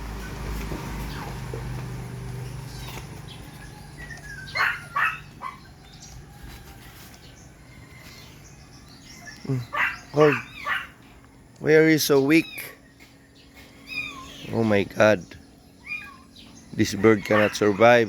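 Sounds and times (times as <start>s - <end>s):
high animal cries: 2.4s - 5.7s, 9.2s - 11.0s, 12.0s - 12.8s, 13.6s - 14.9s, 15.7s - 18.0s.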